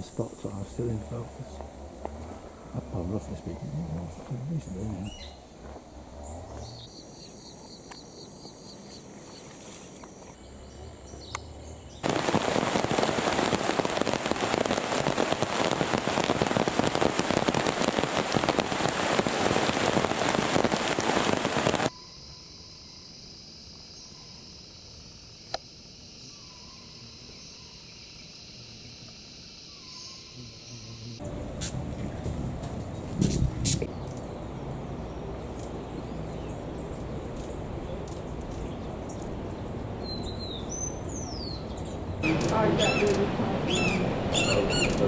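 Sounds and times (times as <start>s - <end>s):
loud even rushing noise: 31.2s - 45.0s
steady high hum: 31.2s - 45.0s.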